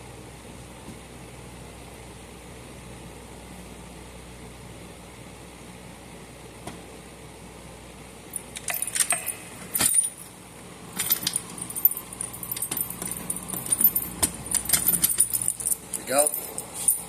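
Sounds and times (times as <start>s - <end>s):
steady low hum: 0.0s - 17.0s
metal hardware clinking: 8.3s - 10.3s, 11.0s - 17.0s.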